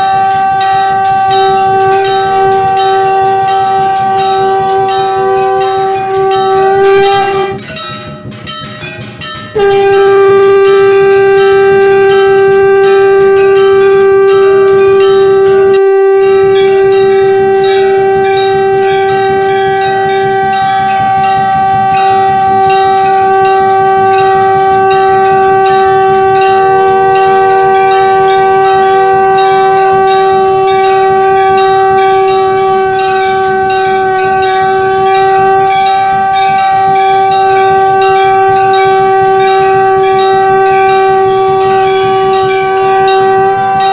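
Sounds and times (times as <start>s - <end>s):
conch shell blown: 0.0s - 7.7s, 9.5s - 43.9s.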